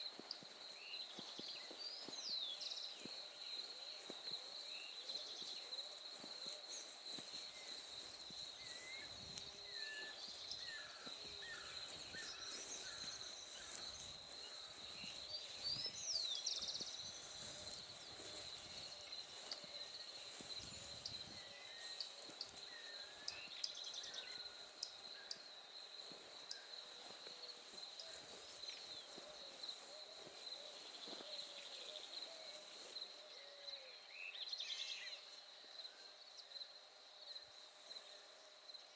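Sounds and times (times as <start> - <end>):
birds chirping and singing: 8.6 - 24.9.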